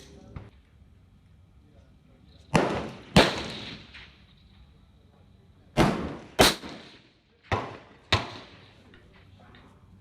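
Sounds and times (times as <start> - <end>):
gunshots with ringing tail: 2.5 - 4.1, 5.7 - 8.6.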